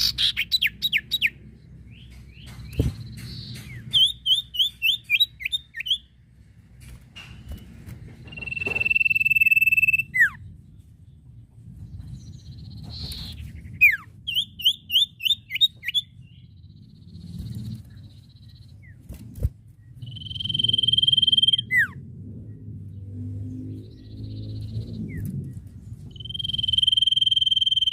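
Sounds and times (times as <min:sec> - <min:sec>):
bird whistling song: 0:00.0 - 0:06.2, 0:08.2 - 0:10.5, 0:12.0 - 0:19.0, 0:20.0 - 0:22.0, 0:26.0 - 0:27.9.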